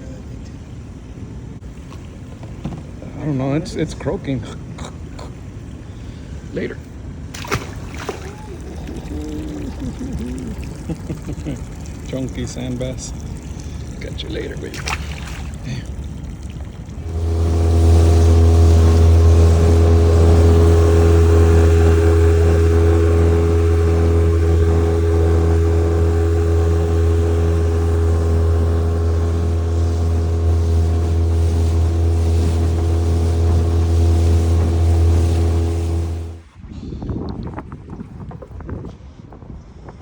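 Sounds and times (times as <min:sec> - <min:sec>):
outboard motor droning: 0:01.0 - 0:36.7.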